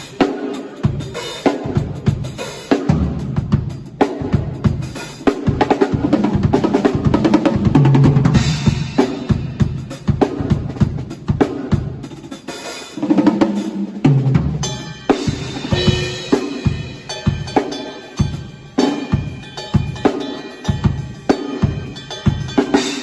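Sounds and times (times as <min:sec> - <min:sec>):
drum kit fills: 0:00.0 - 0:23.0
cymbal crash: 0:14.4 - 0:23.0.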